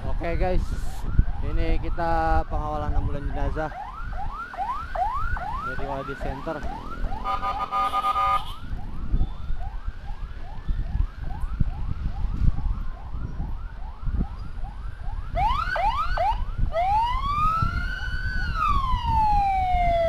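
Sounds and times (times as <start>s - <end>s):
low road rumble: 0.0s - 20.0s
siren wail: 0.5s - 20.0s
emergency siren yelping: 0.8s - 20.0s
horn blast: 7.2s - 8.6s.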